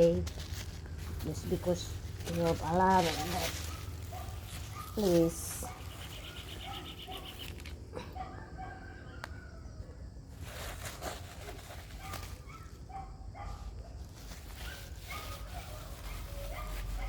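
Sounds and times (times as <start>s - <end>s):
animal calls: 3.0s - 9.6s.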